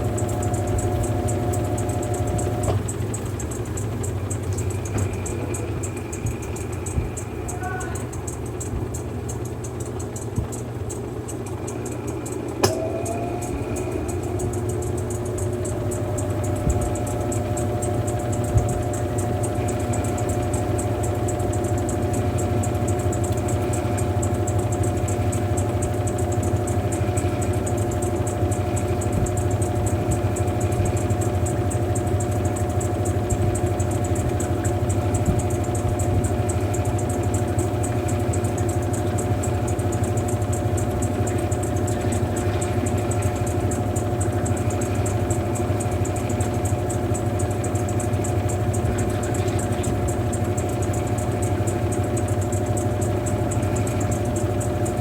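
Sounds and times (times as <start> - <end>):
washing machine motor hum: 0.0 - 55.0.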